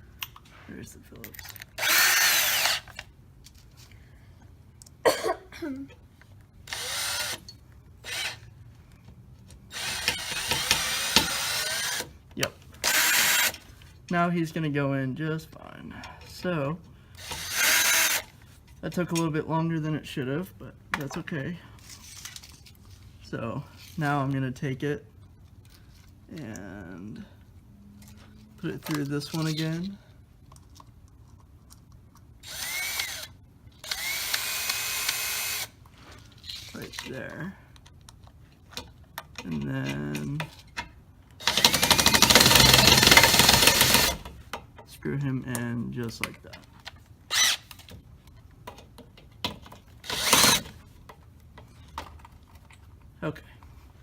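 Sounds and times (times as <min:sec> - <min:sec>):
power drill driving a screw: 0:01.8 - 0:03.0, 0:06.7 - 0:08.5, 0:09.7 - 0:12.1, 0:12.8 - 0:13.6, 0:17.2 - 0:18.3, 0:32.4 - 0:35.8, 0:41.4 - 0:44.3, 0:47.3 - 0:47.7, 0:50.0 - 0:50.8.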